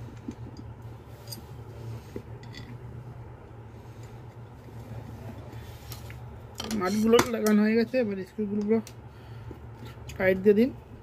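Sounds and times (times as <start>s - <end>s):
steady low hum: 0.0s - 11.0s
metallic clicks and scrapes: 0.1s - 2.8s.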